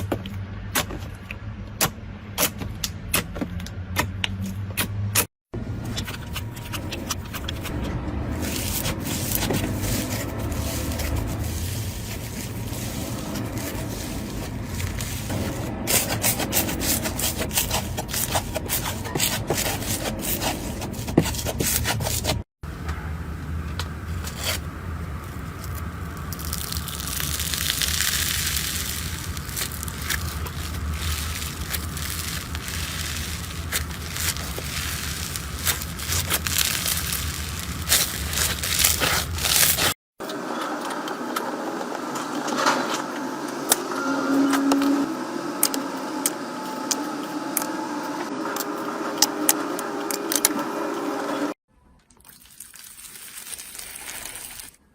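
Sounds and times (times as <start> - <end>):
slime squeezed and scraped by hand: 5.9 - 22.5, 24.1 - 40.0, 52.7 - 54.8.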